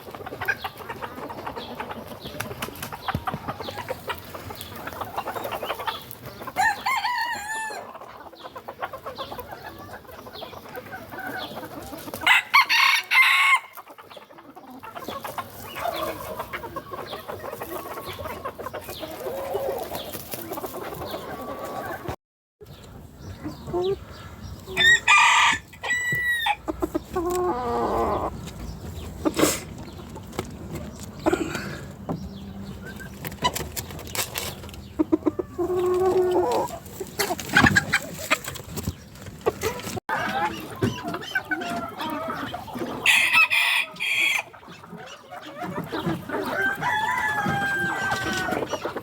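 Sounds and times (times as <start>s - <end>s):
chickens clucking: 0.0s - 49.0s
rooster crowing: 6.6s - 7.8s, 24.7s - 26.6s, 46.5s - 48.6s.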